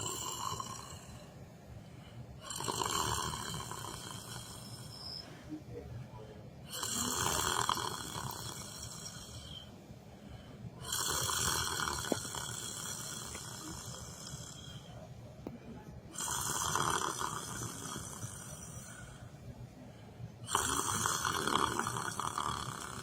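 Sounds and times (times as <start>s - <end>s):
person snoring: 0.0s - 1.3s, 2.4s - 5.0s, 6.7s - 9.7s, 10.8s - 15.0s, 16.1s - 19.2s, 20.5s - 23.0s.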